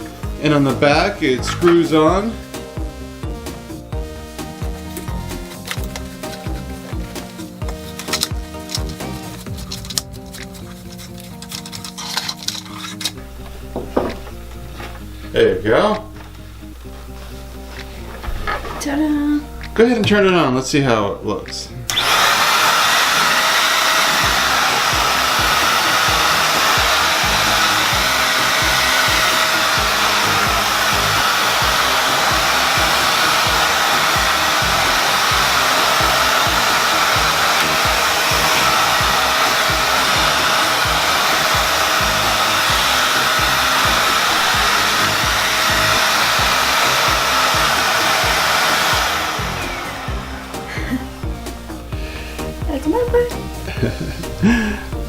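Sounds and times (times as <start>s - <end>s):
vacuum cleaner running: 0.0s - 10.3s, 21.9s - 55.0s.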